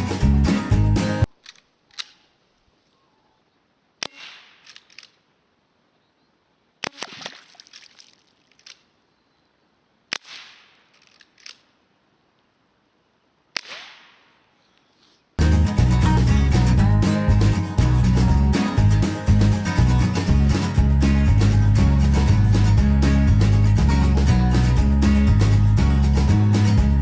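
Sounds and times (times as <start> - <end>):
rifle mechanism clicks: 1.3 - 2.3, 4.6 - 5.2, 10.9 - 11.7
air rifle shots: 4.0 - 5.2, 10.1 - 11.7, 13.5 - 14.4.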